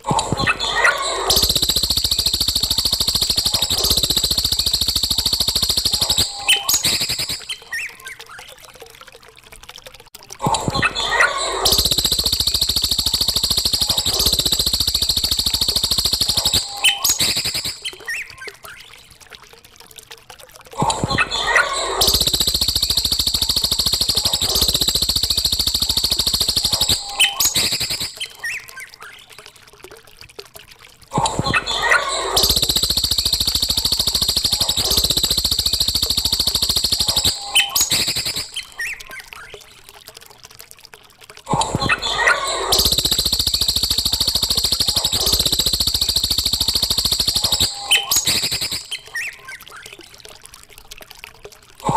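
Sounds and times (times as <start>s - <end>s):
bird chirps: 0.4s - 8.2s, 11.0s - 18.7s, 21.3s - 29.1s, 31.6s - 39.2s, 42.0s - 49.8s
songbird chirping and trilling: 26.6s - 29.0s.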